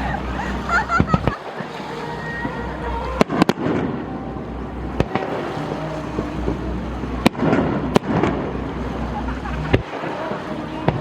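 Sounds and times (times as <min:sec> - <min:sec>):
low background rumble: 0:00.0 - 0:11.0
fireworks bursting with bangs: 0:03.2 - 0:04.0, 0:05.0 - 0:05.9, 0:07.2 - 0:08.6.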